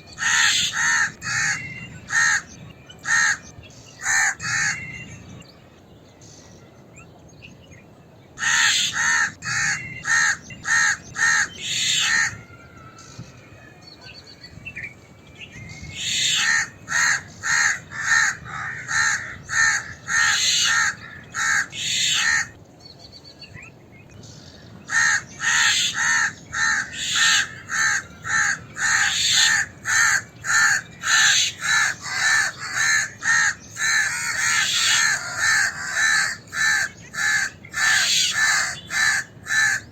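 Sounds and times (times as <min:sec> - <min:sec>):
crow cawing: 0:00.2 - 0:02.4, 0:03.0 - 0:03.4, 0:04.0 - 0:04.8, 0:08.4 - 0:12.4, 0:16.0 - 0:22.5, 0:24.9 - 0:39.9.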